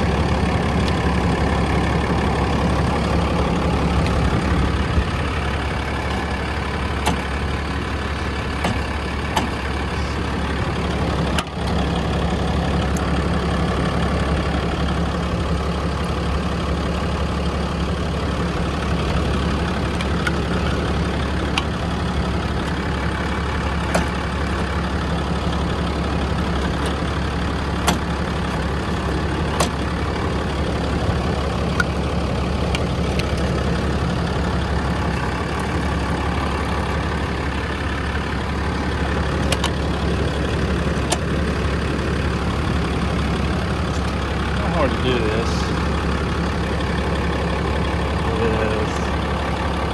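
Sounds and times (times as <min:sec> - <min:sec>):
diesel engine idling: 0:00.0 - 0:49.9.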